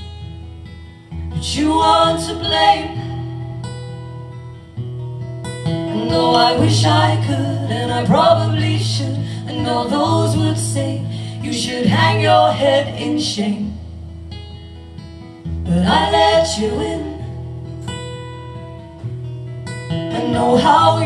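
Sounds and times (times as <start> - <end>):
acoustic guitar chords: 0.0 - 21.0
person singing: 5.9 - 13.8, 20.1 - 21.0.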